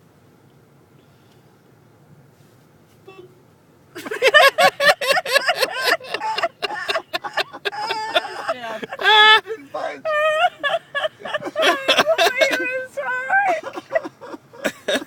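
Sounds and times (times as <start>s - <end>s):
people laughing and shrieking: 4.1s - 15.0s.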